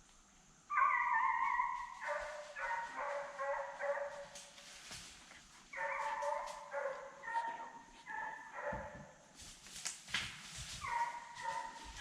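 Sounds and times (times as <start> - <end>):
hounds baying: 0.7 - 4.5, 5.7 - 9.1, 10.8 - 12.0.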